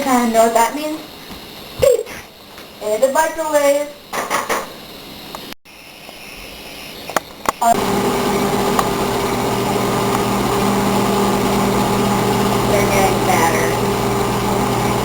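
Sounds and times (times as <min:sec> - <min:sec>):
microwave oven humming: 0:07.6 - 0:15.0.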